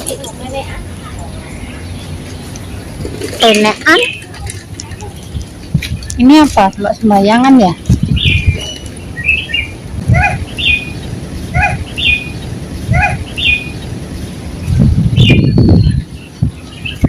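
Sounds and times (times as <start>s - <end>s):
high bird chirp: 1.1s - 17.0s
lower bird call: 8.1s - 17.0s.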